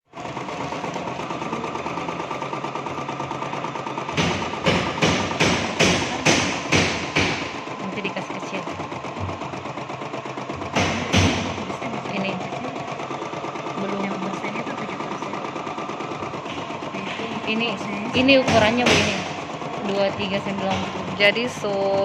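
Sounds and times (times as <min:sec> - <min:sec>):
embroidery machine needle clatter: 0:00.1 - 0:22.0
loud knocks: 0:04.1 - 0:07.7, 0:10.6 - 0:11.7, 0:18.1 - 0:21.2.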